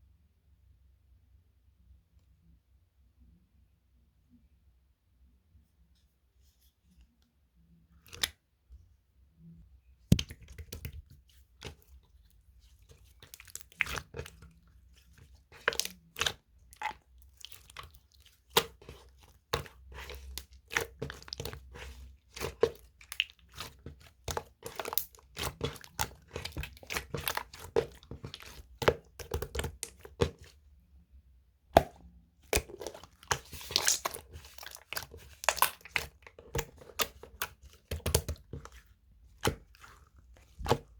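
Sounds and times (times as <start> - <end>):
slime popping and crackling: 15.6 - 30.4, 31.8 - 38.6.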